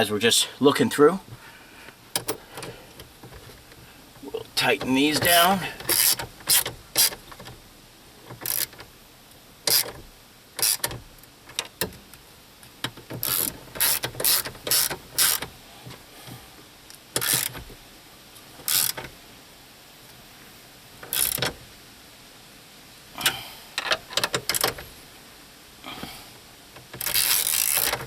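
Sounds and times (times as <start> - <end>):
socket ratchet clicking: 5.8 - 7.5, 8.4 - 8.9, 9.7 - 10.0, 10.6 - 11.9, 13.0 - 15.5, 17.2 - 17.6, 18.6 - 19.1, 21.1 - 21.6, 23.8 - 24.8, 27.0 - 28.0.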